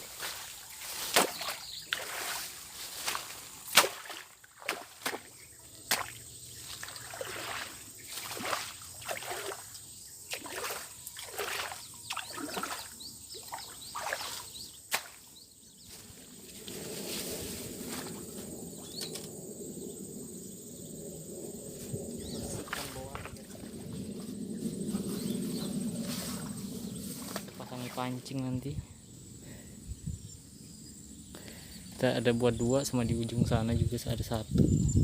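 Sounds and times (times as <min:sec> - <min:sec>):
water sloshing and splashing: 0:00.0 - 0:15.3, 0:22.3 - 0:24.1
gliding chirp-like sounds: 0:05.3 - 0:29.4.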